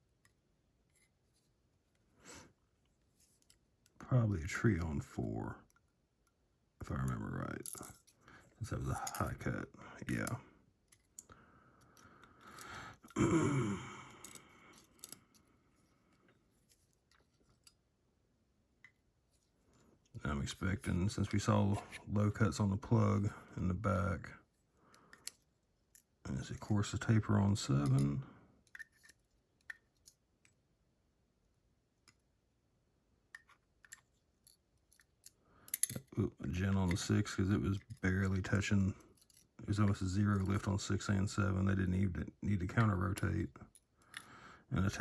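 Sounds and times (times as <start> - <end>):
short vocal sound: 13.1 - 14.2
metal lock parts clicking: 27.8 - 30.5, 33.3 - 36.2, 39.1 - 39.5
faint metal clicks: 33.3 - 38.1.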